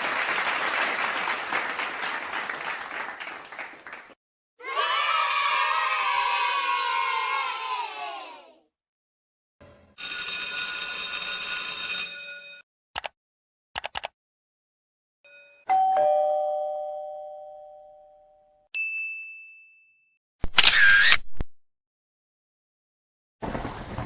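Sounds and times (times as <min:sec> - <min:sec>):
short clicks: 0:13.0 - 0:13.2, 0:13.8 - 0:14.1
short high ding: 0:15.3 - 0:20.2
two-tone doorbell chime: 0:15.3 - 0:20.2.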